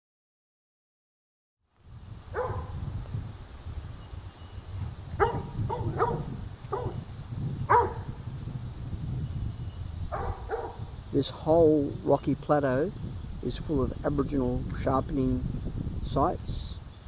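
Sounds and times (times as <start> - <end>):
dog barking: 2.3 - 2.8, 5.2 - 7.0, 7.7 - 8.2, 10.1 - 10.8.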